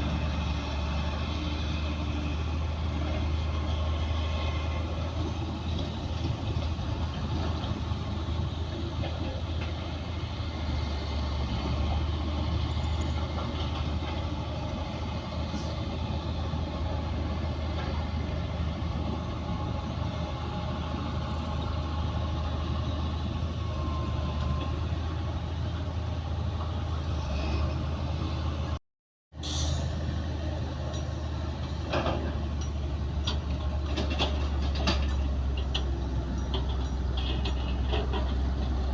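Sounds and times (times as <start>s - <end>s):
bulldozer diesel engine running: 0.0s - 28.8s, 29.5s - 38.9s
short metallic clanks: 31.8s - 38.4s.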